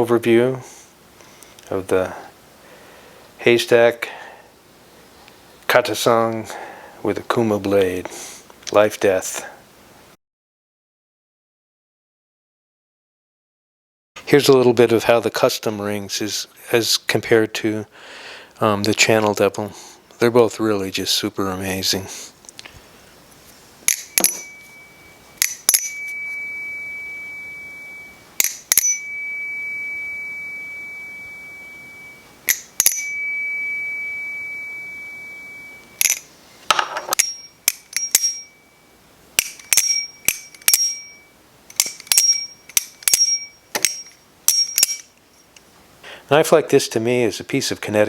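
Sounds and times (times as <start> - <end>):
knife handles clacking: 23.9 - 24.8, 25.4 - 26.3, 36.0 - 38.6, 39.4 - 45.6
bell-like metal ring: 23.9 - 45.4.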